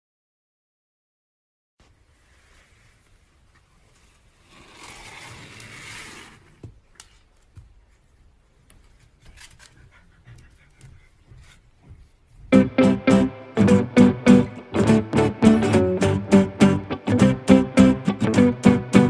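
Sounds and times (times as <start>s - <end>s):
dog panting: 9.5s - 12.0s.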